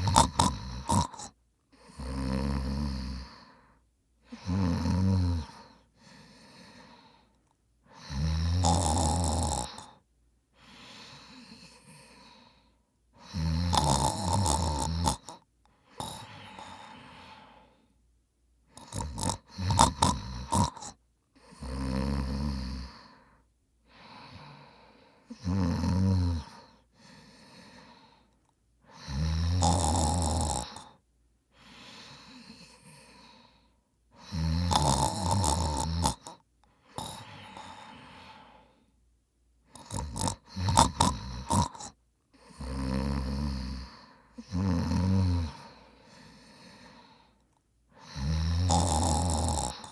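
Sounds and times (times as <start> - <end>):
man snoring: 0.0 - 3.6, 4.3 - 7.2, 7.9 - 10.0, 13.2 - 17.7, 18.7 - 23.2, 24.0 - 28.1, 28.9 - 31.0, 34.2 - 38.8, 39.7 - 47.4, 48.0 - 49.9
soft breathing out: 5.4 - 8.0, 9.8 - 12.9, 15.7 - 18.0, 26.5 - 28.4, 30.8 - 34.4, 36.2 - 39.0, 45.4 - 48.2.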